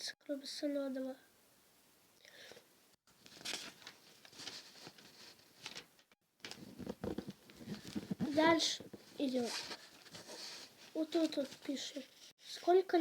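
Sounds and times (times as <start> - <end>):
paper rustling and pen scratching: 3.2 - 12.4.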